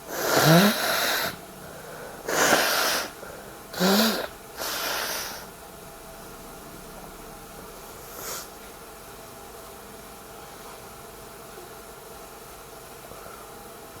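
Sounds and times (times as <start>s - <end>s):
person sniffing: 0.0s - 5.5s, 8.1s - 8.5s
background hiss: 0.0s - 14.0s.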